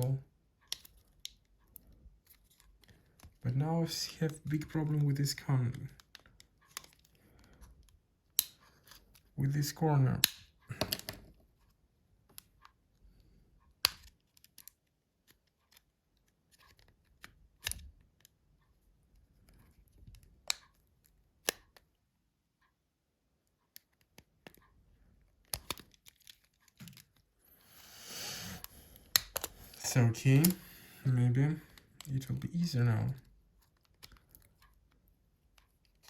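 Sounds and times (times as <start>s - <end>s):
sharp plastic clicks: 0.6s - 3.4s, 4.3s - 9.4s, 10.2s - 11.4s, 13.7s - 18.4s, 19.5s - 22.0s, 25.3s - 27.3s, 28.6s - 30.8s.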